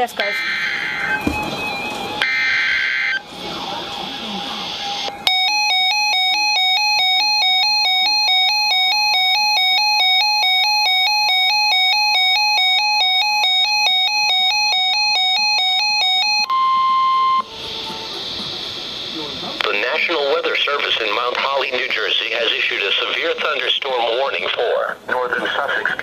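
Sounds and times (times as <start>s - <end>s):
steady warning alarm tone: 0.0s - 24.4s
buzzy two-pitch alert warble: 16.4s - 18.5s.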